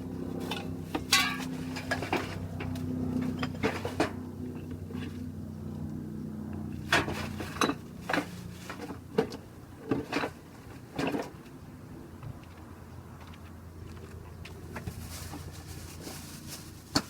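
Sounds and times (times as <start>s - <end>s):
metal parts and tools clattering: 0.5s - 2.4s.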